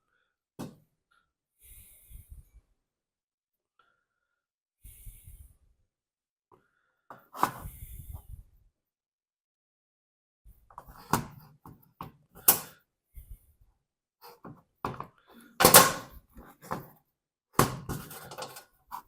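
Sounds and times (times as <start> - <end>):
tools clattering on workbench: 14.9 - 16.9, 17.6 - 18.7.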